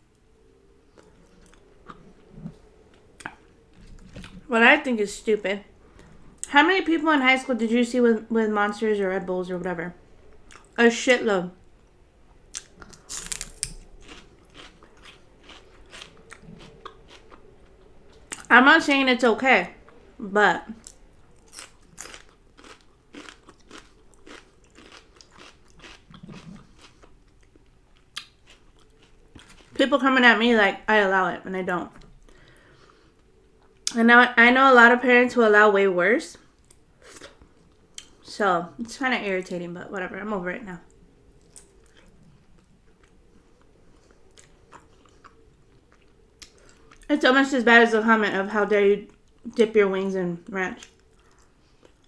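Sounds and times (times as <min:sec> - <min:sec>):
person chewing crunchy food: 0:12.4 - 0:18.5, 0:20.7 - 0:29.8, 0:41.4 - 0:47.1, 0:50.8 - 0:52.0.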